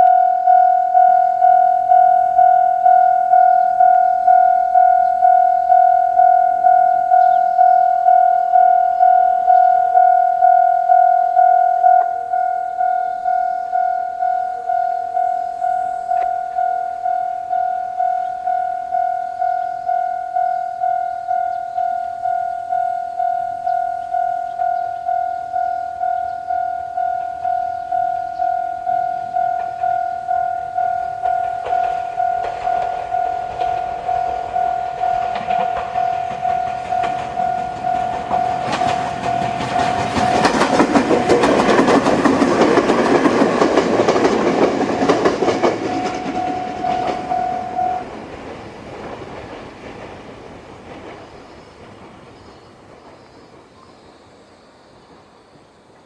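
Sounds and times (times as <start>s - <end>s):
level crossing bell ringing: 0.0s - 42.2s, 44.2s - 48.2s
train wheels clattering over rail joints: 27.6s - 53.9s.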